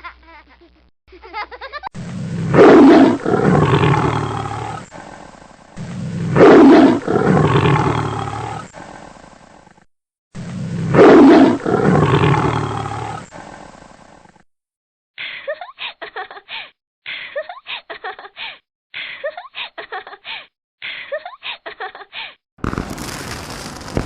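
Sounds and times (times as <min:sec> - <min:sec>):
big cat roaring: 0:02.2 - 0:05.2, 0:05.8 - 0:08.9, 0:10.4 - 0:13.7.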